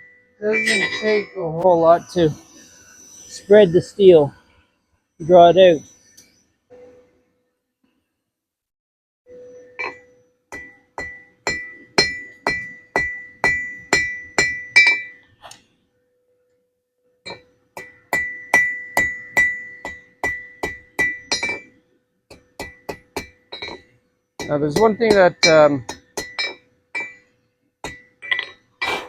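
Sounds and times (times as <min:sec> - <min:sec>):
hammer ringing on anvil: 0:00.0 - 0:01.6, 0:09.6 - 0:15.2, 0:17.3 - 0:23.8, 0:24.4 - 0:27.2.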